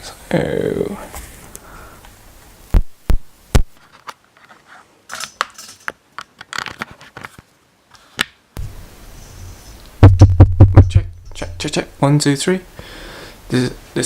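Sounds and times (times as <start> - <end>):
low hum: 8.6 - 12.0
microphone plug clicks and knocks: 10.0 - 11.3.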